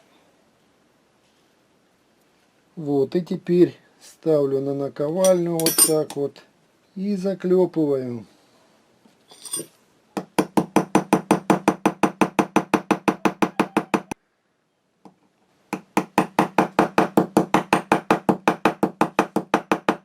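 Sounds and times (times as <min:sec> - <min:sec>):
hammer tapping on metal anvil: 0:05.2 - 0:06.2.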